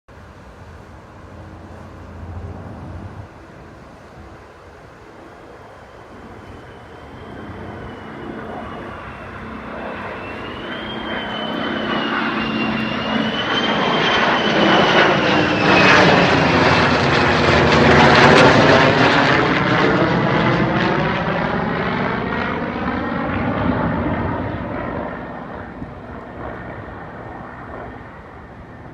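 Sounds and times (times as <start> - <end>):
airplane flying past: 0.1 - 28.9
high whine: 1.1 - 28.9.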